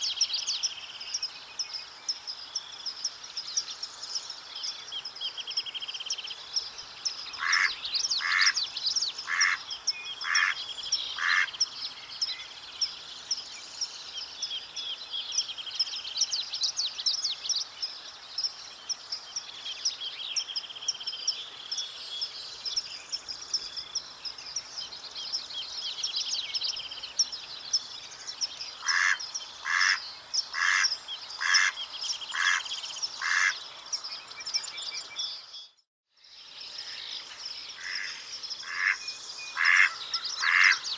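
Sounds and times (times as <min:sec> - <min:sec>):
songbirds trilling and chirping: 0:00.0 - 0:40.9
mallard quacking: 0:28.8 - 0:30.0.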